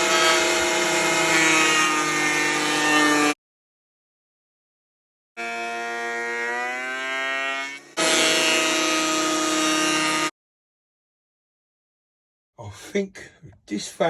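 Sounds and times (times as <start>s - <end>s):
power tool motor whine: 0.0s - 3.4s, 5.4s - 10.3s.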